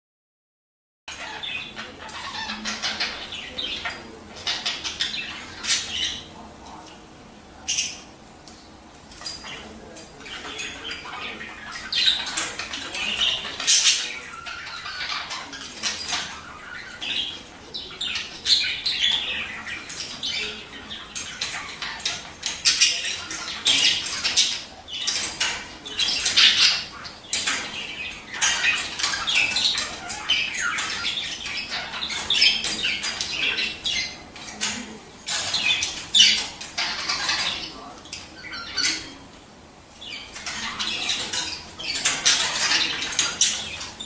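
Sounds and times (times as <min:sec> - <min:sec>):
budgerigars chirping and squawking: 0:01.1 - 0:06.5, 0:07.6 - 0:08.1, 0:09.4 - 0:39.3, 0:39.9 - 0:44.0.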